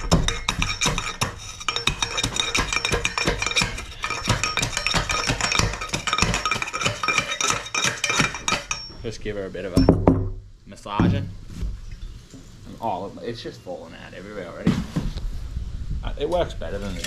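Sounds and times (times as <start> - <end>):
metal bar knocking inside metal shell: 0.0 - 9.0
steel ringing: 0.0 - 10.0.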